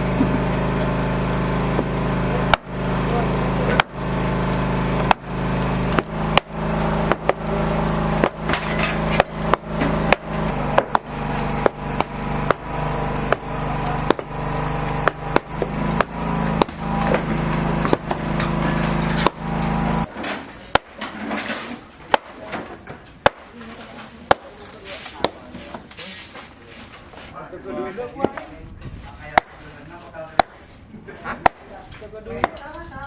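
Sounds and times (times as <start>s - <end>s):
steady low hum: 0.0s - 33.0s
hand tool strikes: 1.7s - 4.0s, 5.0s - 22.6s, 23.2s - 23.5s, 24.3s - 25.8s, 29.3s - 29.6s, 30.4s - 30.7s, 31.4s - 32.8s.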